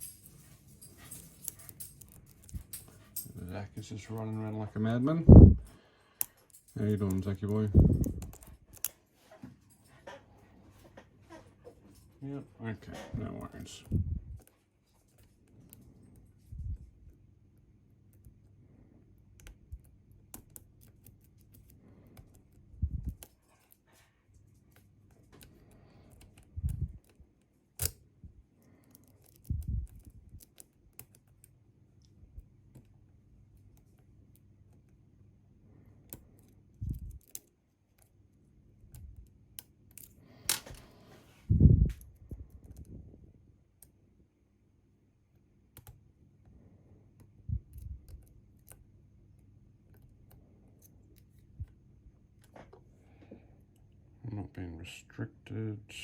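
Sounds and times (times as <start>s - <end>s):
lock-picking tools clicking: 0.0s - 5.0s, 5.6s - 9.0s, 25.3s - 28.0s, 28.7s - 31.6s, 36.0s - 38.1s.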